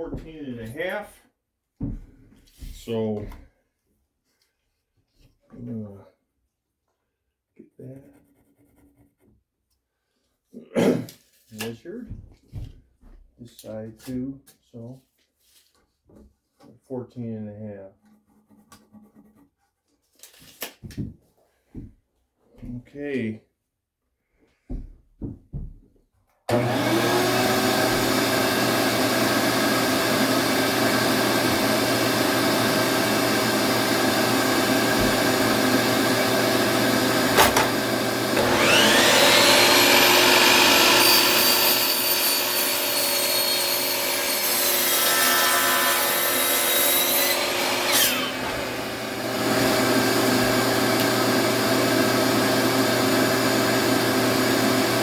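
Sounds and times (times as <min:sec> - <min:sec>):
power saw cutting wood: 0:26.5 - 0:55.0.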